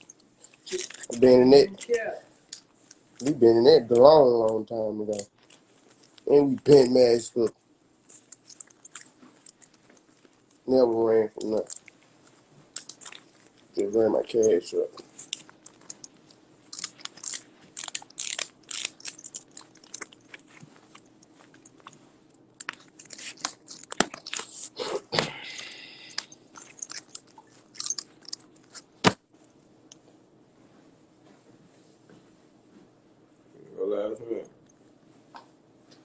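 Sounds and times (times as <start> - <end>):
close crunching and clicking: 3.9 - 6.3, 8.1 - 10.6, 11.4 - 12.0, 12.7 - 13.8, 15.0 - 24.8, 25.6 - 29.2.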